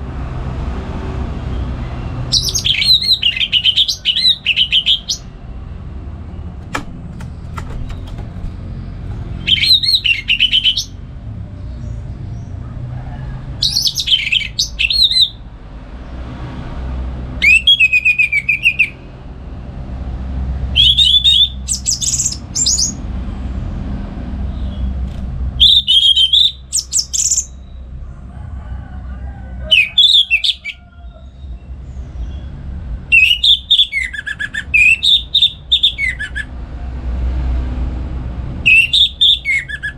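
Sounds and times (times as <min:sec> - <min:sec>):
low steady rumble: 0:00.0 - 0:39.9
bird singing: 0:02.2 - 0:05.4, 0:09.2 - 0:11.0, 0:13.6 - 0:15.4, 0:17.4 - 0:19.1, 0:20.7 - 0:23.0, 0:25.6 - 0:27.9, 0:29.7 - 0:32.5, 0:33.1 - 0:36.5, 0:38.6 - 0:39.9.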